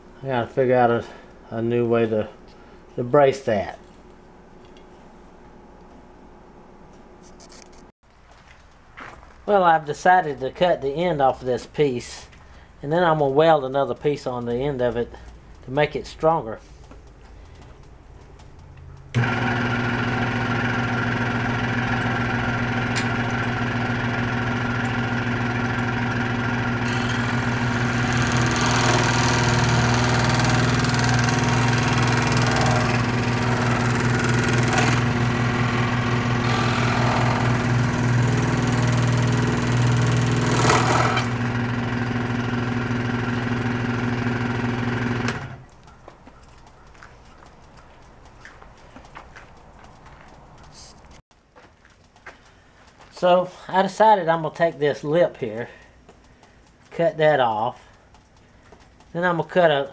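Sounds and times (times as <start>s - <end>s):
power tool cutting plastic: 19.2s - 45.7s.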